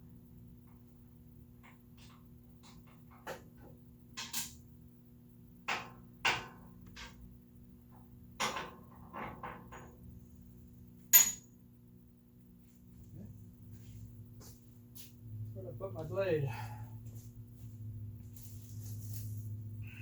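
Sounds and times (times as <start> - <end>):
ringing metallic clink: 11.2 - 11.5.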